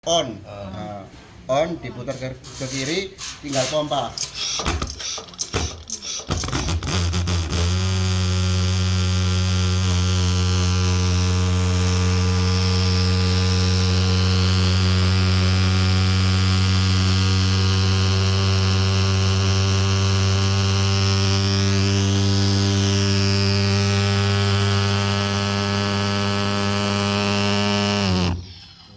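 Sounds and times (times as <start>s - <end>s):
hand pumping: 2.6s - 12.4s, 16.6s - 28.8s.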